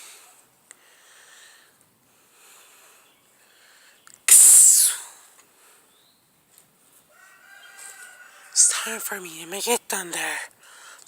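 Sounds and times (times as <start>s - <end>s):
loud hissing burst: 4.3s - 5.2s.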